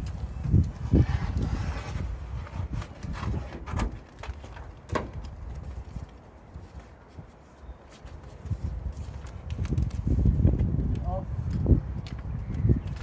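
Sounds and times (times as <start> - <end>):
clicks knocks and rustles of vinyl: 2.6 - 7.3, 7.9 - 13.0.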